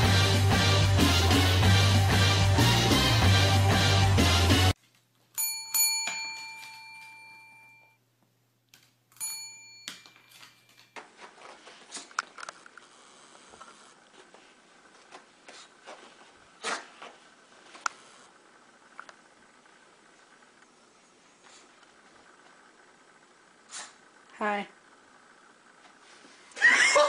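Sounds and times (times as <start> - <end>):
small bell ringing: 5.4 - 8.0, 9.2 - 10.9.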